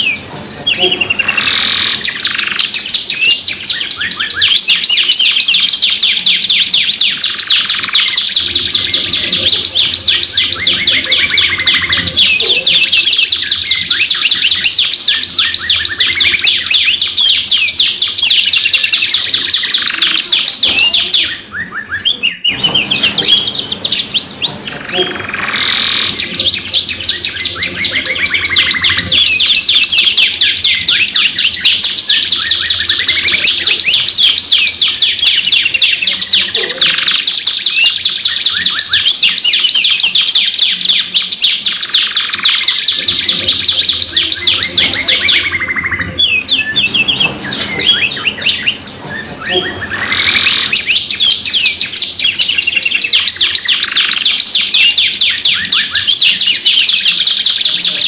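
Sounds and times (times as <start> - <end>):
canaries singing in rapid trills: 0.0 - 58.0.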